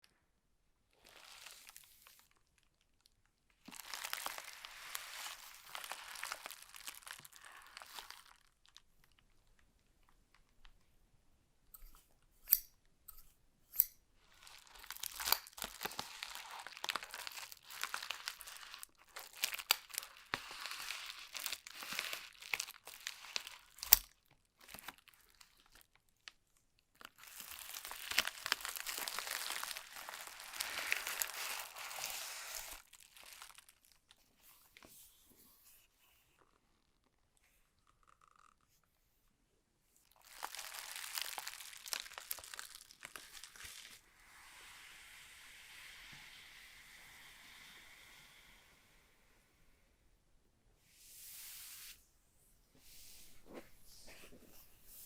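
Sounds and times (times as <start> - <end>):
plastic wrap and paper crinkling: 0.9 - 10.4, 14.2 - 34.9, 40.0 - 44.0.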